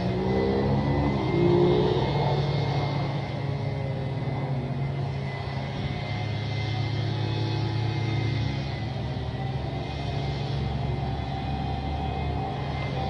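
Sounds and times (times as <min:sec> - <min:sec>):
distant warning sirens: 0:00.0 - 0:13.0
steady motor drone: 0:00.0 - 0:13.0.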